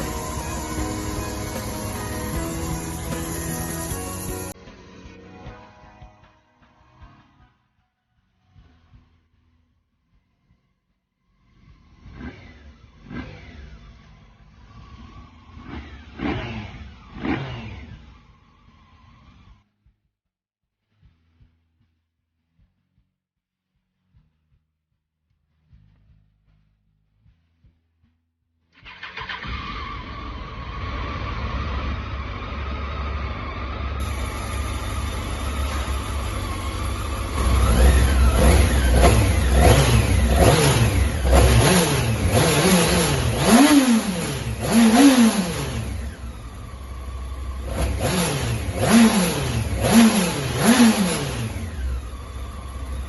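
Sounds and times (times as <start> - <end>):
motorcycle engine revving: 0.0 - 5.1, 10.2 - 20.0, 28.8 - 53.0.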